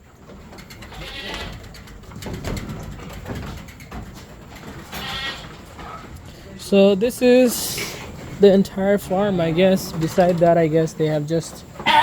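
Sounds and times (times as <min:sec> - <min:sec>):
sheep and lambs bleating: 0:00.9 - 0:01.6, 0:04.9 - 0:05.5, 0:11.8 - 0:12.0
low shuffling: 0:01.7 - 0:11.8.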